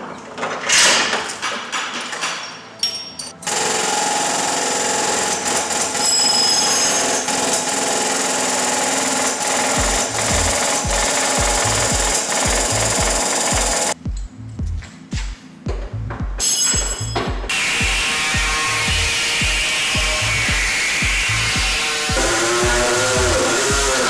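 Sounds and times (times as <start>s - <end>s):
knocks and clatters: 0.0s - 3.4s
low thumps: 9.8s - 24.0s.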